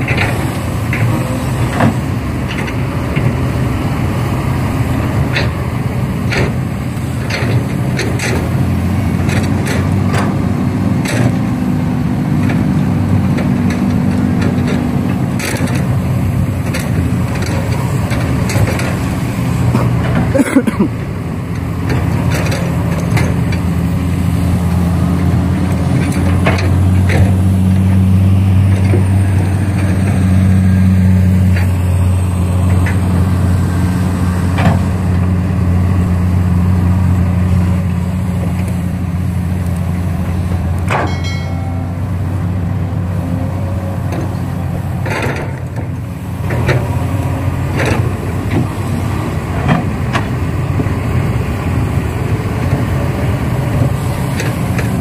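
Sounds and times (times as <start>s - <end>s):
vehicle engine droning: 0.0s - 55.0s
sharp clicks and knocks: 5.2s - 11.6s, 12.4s - 20.9s, 21.5s - 23.7s, 40.7s - 42.4s.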